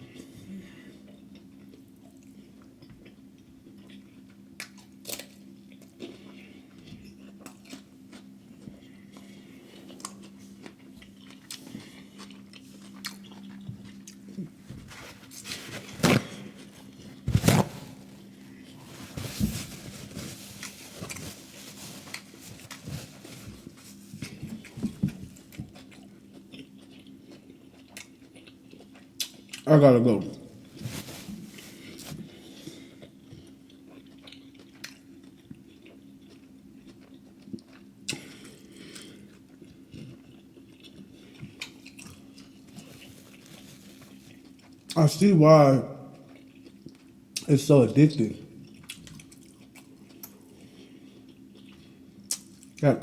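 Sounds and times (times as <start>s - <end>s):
low steady hum: 8.8s - 26.6s
person chewing and crunching: 9.2s - 29.6s, 30.8s - 45.0s.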